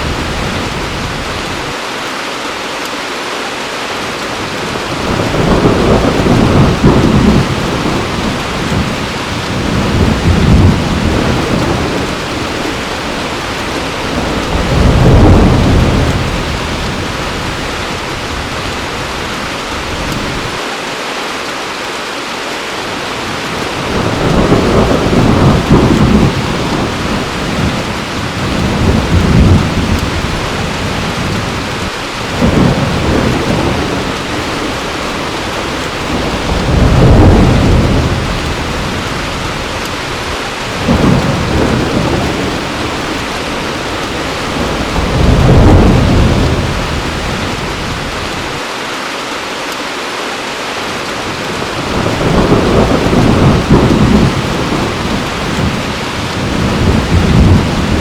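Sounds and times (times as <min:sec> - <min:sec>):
heavy rain falling: 0:00.0 - 0:58.0
rolling thunder rumbling: 0:04.4 - 0:20.6, 0:23.2 - 0:48.6, 0:51.2 - 0:58.0.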